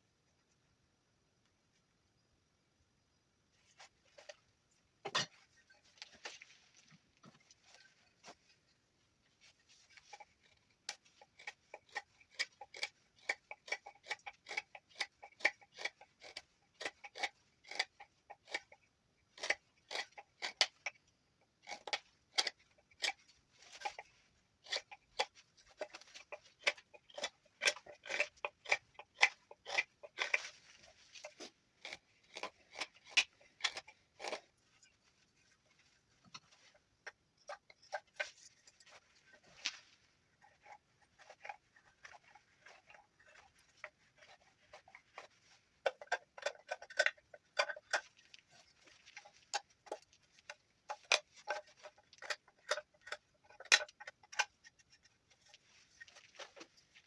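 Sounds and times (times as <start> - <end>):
knife whittling wood: 21.6 - 35.6.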